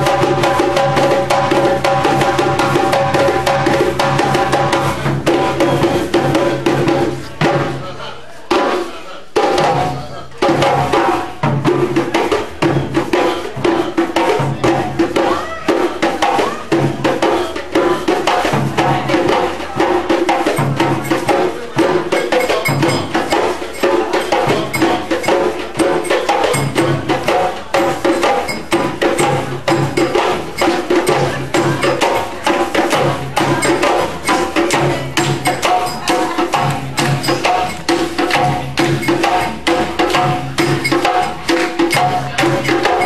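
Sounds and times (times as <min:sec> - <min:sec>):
sharp wooden percussion strikes: 0:00.0 - 0:07.8, 0:08.6 - 0:43.0
voices: 0:00.0 - 0:43.0
low drum pattern: 0:15.9 - 0:43.0.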